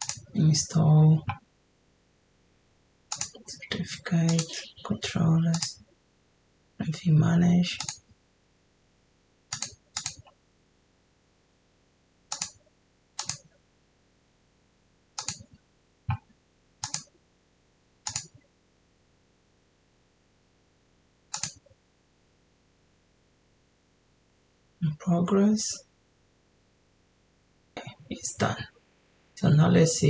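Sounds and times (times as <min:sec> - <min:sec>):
mouse and keyboard clicks: 0:03.1 - 0:03.4, 0:05.5 - 0:05.7, 0:09.5 - 0:10.3, 0:12.3 - 0:12.6, 0:13.2 - 0:13.5, 0:15.2 - 0:15.5, 0:16.8 - 0:17.1, 0:18.1 - 0:18.4, 0:21.3 - 0:21.7.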